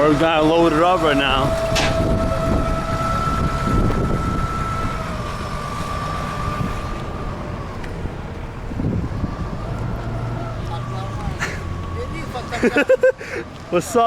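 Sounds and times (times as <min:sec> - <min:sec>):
forklift engine whining: 0:00.0 - 0:14.0
wind buffeting microphone: 0:00.0 - 0:14.0.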